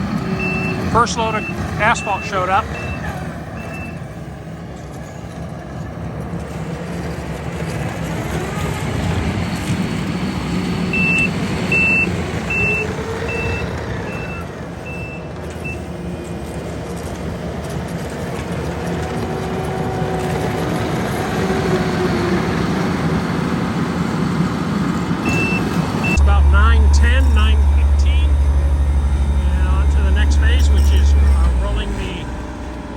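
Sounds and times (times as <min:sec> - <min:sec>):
diesel engine running: 0:00.0 - 0:32.9
reverse alarm beeping: 0:00.3 - 0:04.0, 0:10.9 - 0:15.8, 0:25.2 - 0:32.9.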